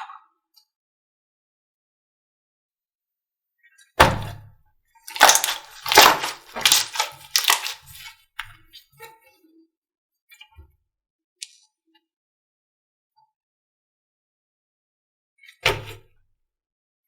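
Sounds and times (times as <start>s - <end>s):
slime popping: 5.1s - 7.8s
slime squeezing: 5.1s - 7.8s.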